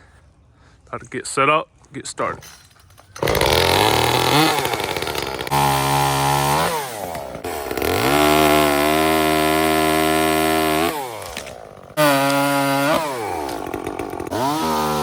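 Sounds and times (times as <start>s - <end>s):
chainsaw engine revving: 3.2s - 15.0s.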